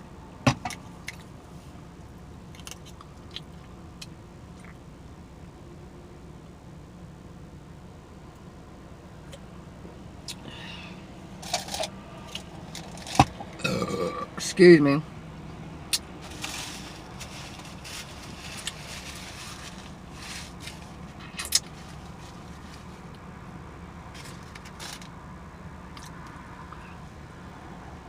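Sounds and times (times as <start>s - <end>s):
car interior hum: 0.0s - 28.0s.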